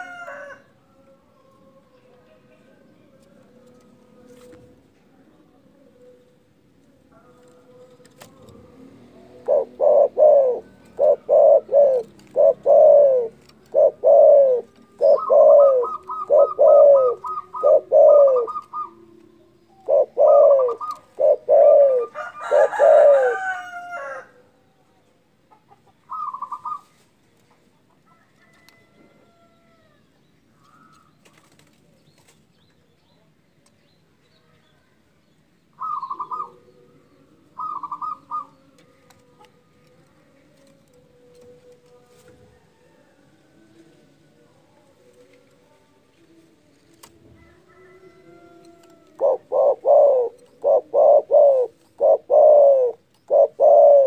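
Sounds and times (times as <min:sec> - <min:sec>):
dove cooing: 0:08.0 - 0:24.3, 0:26.1 - 0:27.0, 0:35.8 - 0:39.5, 0:47.0 - 0:54.0.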